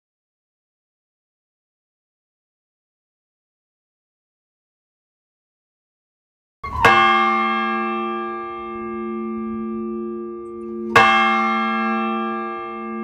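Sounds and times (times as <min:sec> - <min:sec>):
large church bell ringing: 0:06.8 - 0:13.0.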